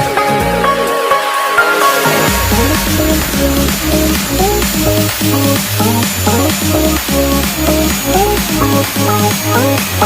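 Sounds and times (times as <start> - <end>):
electronic dance music: 0.6 - 10.0.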